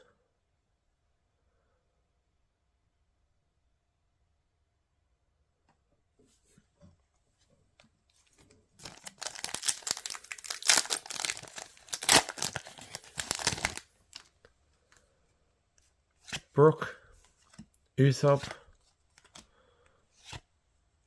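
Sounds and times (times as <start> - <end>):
foil wrapper tearing and crackling: 8.8 - 14.3
wrapper handling ticks: 8.8 - 14.3.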